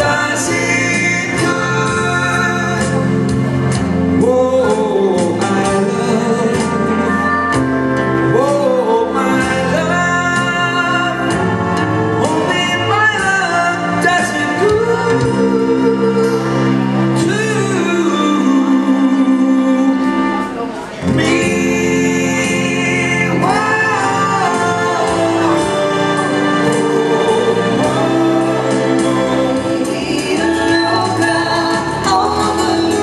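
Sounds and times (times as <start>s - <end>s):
sustained backing chords: 0.0s - 33.0s
person singing long notes: 12.2s - 33.0s.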